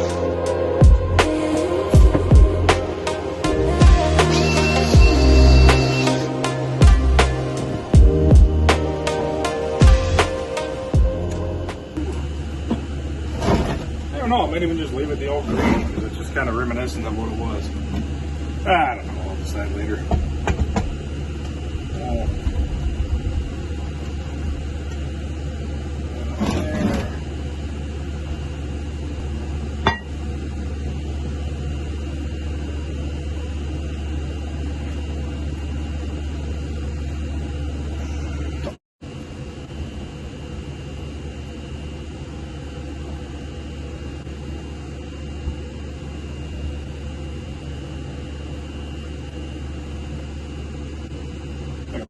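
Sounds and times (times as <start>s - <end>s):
faint high whine: 0.0s - 7.8s
low machine hum: 0.0s - 52.0s.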